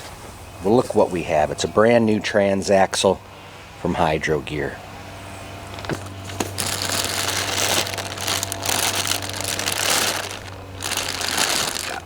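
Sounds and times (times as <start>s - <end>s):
packing material rustling: 5.7s - 12.0s.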